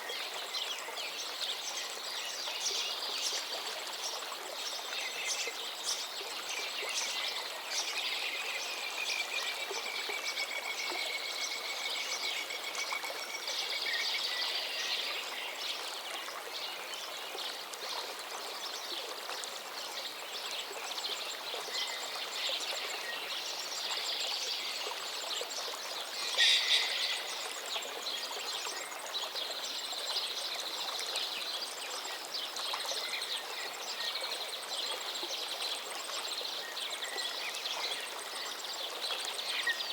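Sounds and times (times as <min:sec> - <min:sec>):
river running: 0:00.0 - 0:39.9
birds singing and calling: 0:25.6 - 0:28.9.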